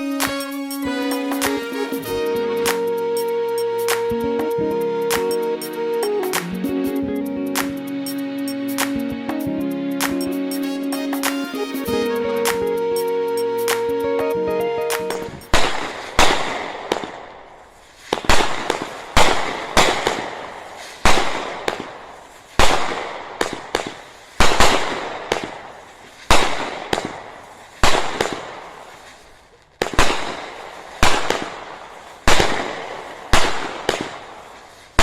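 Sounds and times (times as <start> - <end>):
fireworks banging with echo: 15.1 - 29.2, 29.8 - 35.0.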